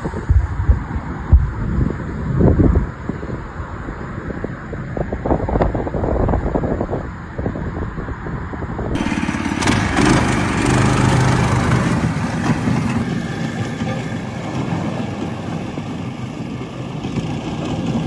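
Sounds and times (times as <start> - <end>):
rushing noise: 8.9 - 18.0
boat engine humming: 9.0 - 18.0.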